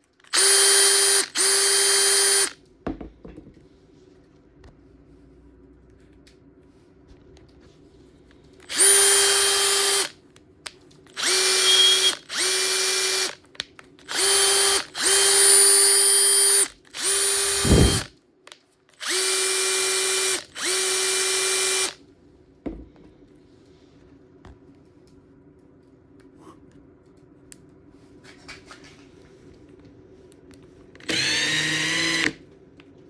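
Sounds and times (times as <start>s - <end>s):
impact driver motor whine: 0.3s - 2.6s, 8.7s - 10.1s, 11.2s - 13.4s, 14.1s - 18.1s, 19.0s - 22.0s, 31.0s - 32.4s.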